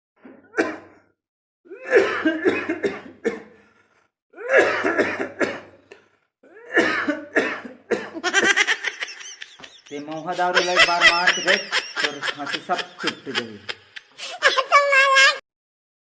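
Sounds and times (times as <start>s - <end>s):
person coughing: 0.5s - 1.0s, 1.7s - 3.6s, 4.4s - 5.8s, 6.5s - 8.2s.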